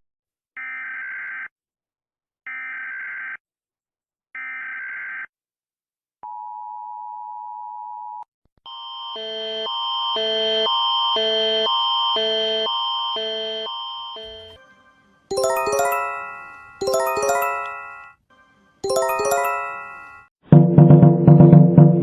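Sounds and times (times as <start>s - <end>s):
pulsing multi-tone alarm: 8.7s - 20.3s.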